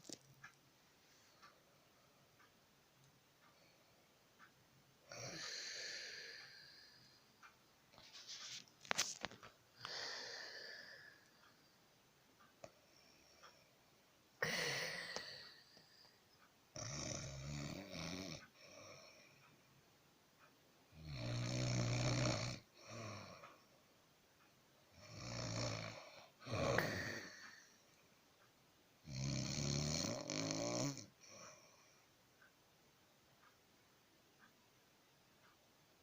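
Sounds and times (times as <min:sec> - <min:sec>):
heavy rattling snores: 0:16.7 - 0:18.4, 0:21.0 - 0:23.4, 0:25.0 - 0:27.6, 0:29.0 - 0:31.3.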